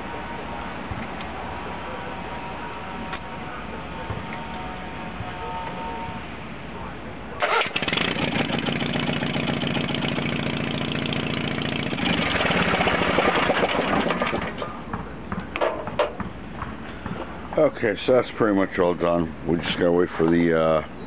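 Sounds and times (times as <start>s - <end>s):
tractor engine starting and idling: 7.4s - 14.7s.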